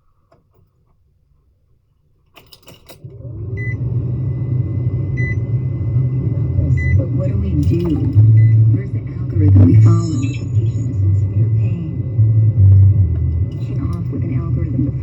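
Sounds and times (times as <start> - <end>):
keys jingling and clicks: 2.3 - 3.1
car engine starting and running: 3.1 - 15.0
thin warning beep: 3.6 - 3.8, 5.2 - 5.5, 6.4 - 15.0.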